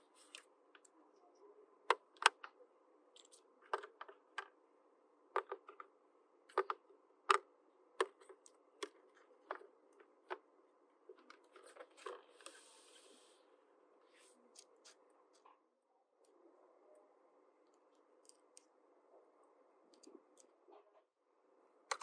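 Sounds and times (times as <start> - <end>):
soft rustle: 11.4 - 15.5.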